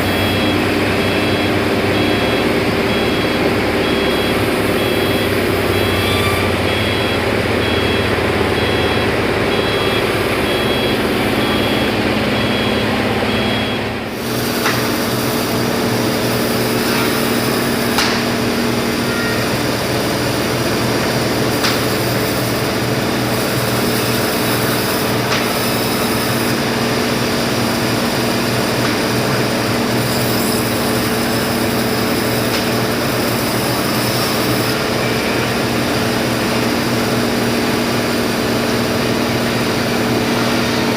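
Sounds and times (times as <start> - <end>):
reversing alarm beeping: 0.0 - 14.9
forklift engine running: 0.0 - 40.9
machine drone: 0.0 - 40.9.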